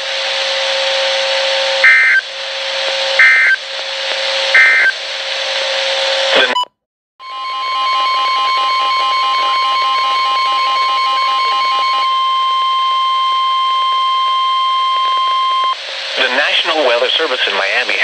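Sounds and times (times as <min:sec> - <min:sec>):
radio hiss with hum: 0:00.0 - 0:06.7, 0:08.3 - 0:18.0
steady alert tone: 0:01.8 - 0:02.2, 0:03.2 - 0:03.6, 0:04.6 - 0:04.9
warbling data bursts: 0:01.8 - 0:02.2, 0:03.2 - 0:03.6, 0:04.6 - 0:04.9.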